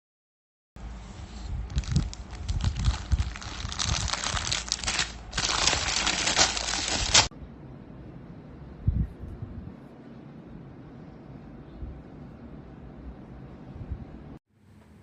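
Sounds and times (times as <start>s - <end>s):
crinkling and rustling handling noise: 1.2s - 7.3s.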